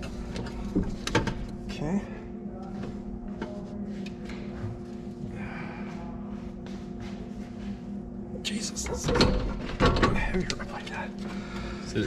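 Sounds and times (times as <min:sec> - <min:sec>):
steady low hum: 0:00.0 - 0:12.0
person breathing: 0:05.2 - 0:06.2, 0:11.2 - 0:12.0.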